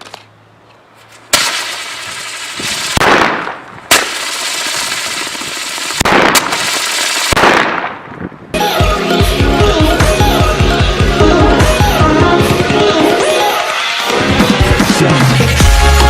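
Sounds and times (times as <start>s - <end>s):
firework rocket hiss and crackle: 1.3s - 7.9s
sharp firework bangs: 1.3s - 8.2s.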